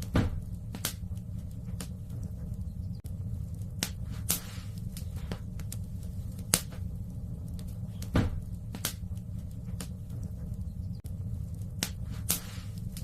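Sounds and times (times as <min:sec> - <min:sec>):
low fire rumble: 0:00.0 - 0:13.0
wood fire crackling and popping: 0:00.0 - 0:13.0.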